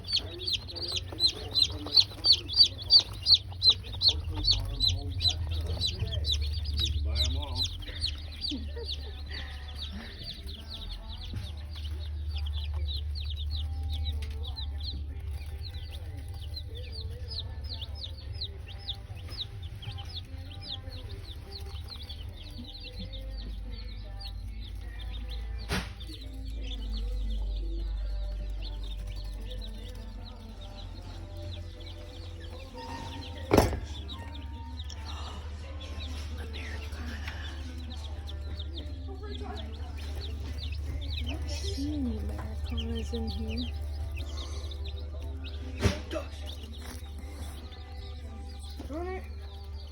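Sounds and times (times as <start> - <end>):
baby chicks peeping: 0.0 - 49.9
loud knock: 33.5 - 34.0.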